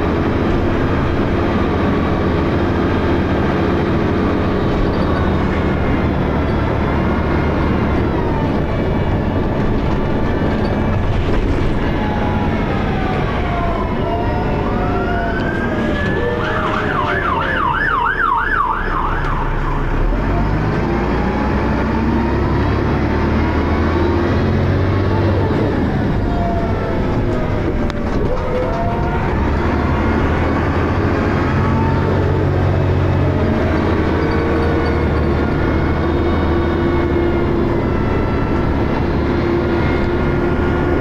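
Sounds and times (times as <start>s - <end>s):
yelping siren: 11.8s - 21.8s, 24.9s - 33.4s.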